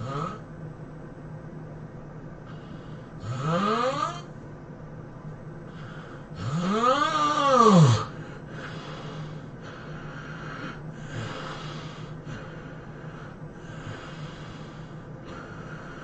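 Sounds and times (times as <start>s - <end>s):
person snoring loudly: 0.0s - 0.4s, 3.2s - 4.3s, 6.4s - 9.3s
heavy breathing: 2.4s - 4.3s, 5.6s - 16.0s.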